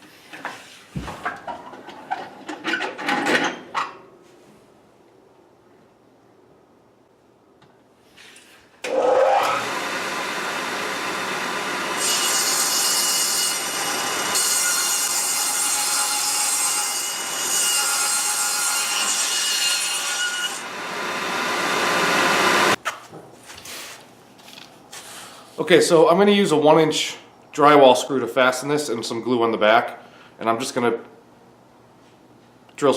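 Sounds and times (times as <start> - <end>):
power tool cutting wood: 8.8 - 22.8.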